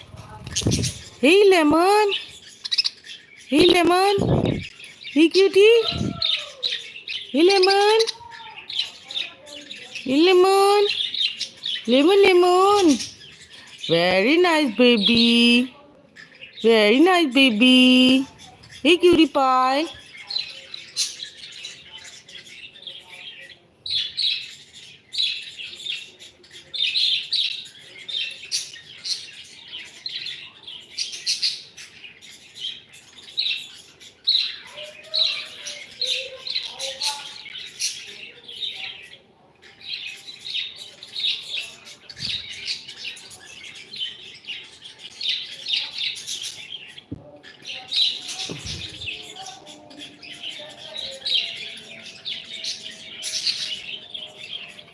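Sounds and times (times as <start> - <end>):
parrots chirping and chattering: 0.0 - 54.9.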